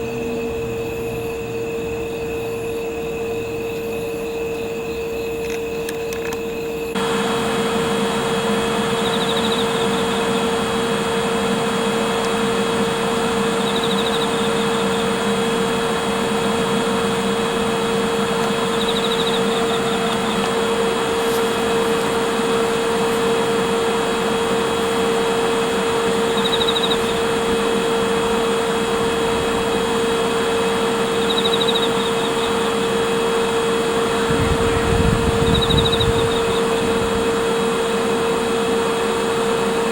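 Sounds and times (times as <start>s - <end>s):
locomotive cooling blowers whirring: 0.0s - 39.9s
faint high chirps: 26.2s - 27.3s.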